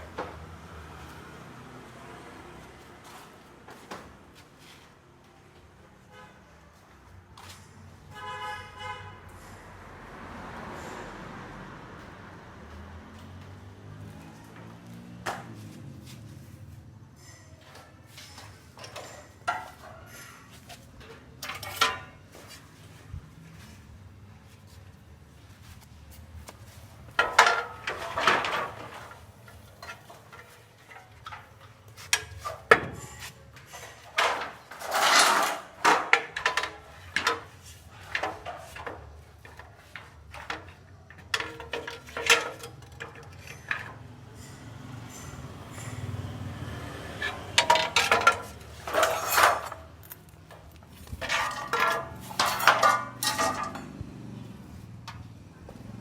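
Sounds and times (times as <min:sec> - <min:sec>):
hard parts clattering: 0:17.2 - 0:22.8, 0:27.0 - 0:56.0
metal pieces clanking: 0:27.2 - 0:37.5, 0:41.3 - 0:46.1, 0:47.2 - 0:54.0.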